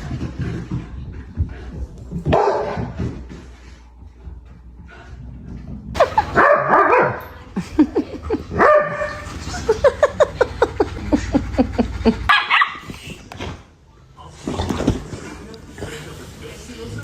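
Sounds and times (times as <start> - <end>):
dog barking: 2.3 - 3.0, 6.4 - 7.2, 8.6 - 9.2, 12.3 - 12.9.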